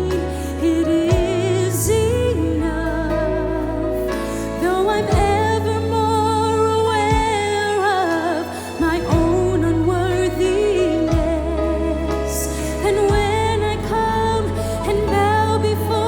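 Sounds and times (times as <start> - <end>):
bass and keyboard chords: 0.0 - 16.0
woman singing gospel: 0.0 - 16.0.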